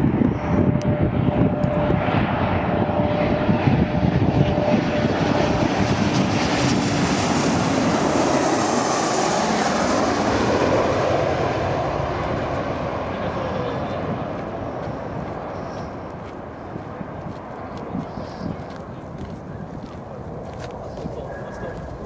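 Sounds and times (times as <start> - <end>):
airliner passing overhead: 0.0 - 22.0
jet engine whine: 0.0 - 22.0.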